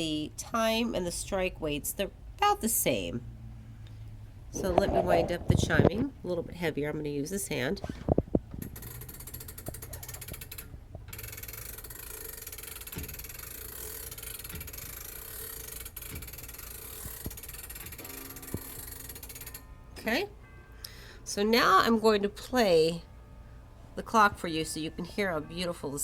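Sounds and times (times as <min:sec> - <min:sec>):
clock winding ratchet clicking: 0:08.6 - 0:19.7.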